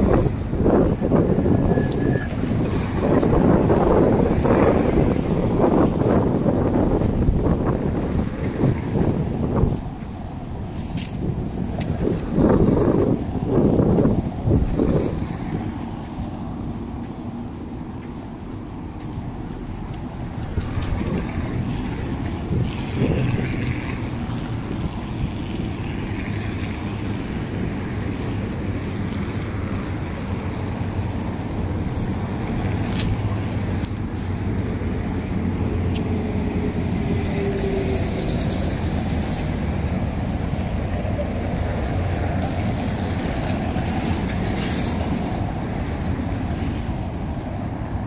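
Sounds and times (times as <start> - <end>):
street traffic rumble: 0.0 - 48.0.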